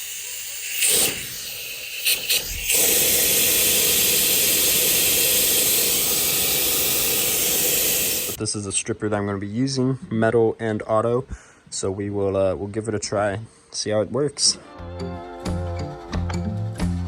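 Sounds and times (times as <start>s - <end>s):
pressurized spray hissing: 0.0s - 8.4s.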